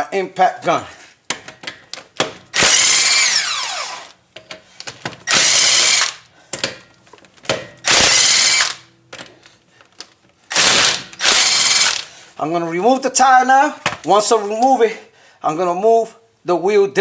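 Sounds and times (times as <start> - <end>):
impact gun spinning off lug nuts: 2.5 - 4.2, 5.2 - 6.2, 7.8 - 8.8, 10.5 - 12.1.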